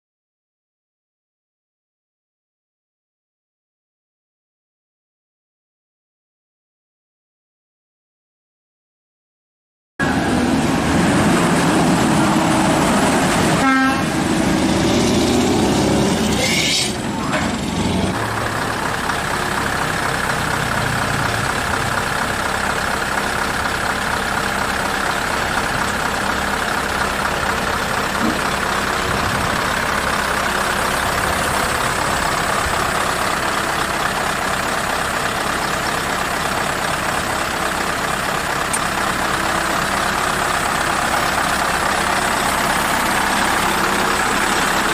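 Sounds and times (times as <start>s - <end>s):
truck engine running: 10.0s - 44.9s
truck horn: 13.3s - 17.2s.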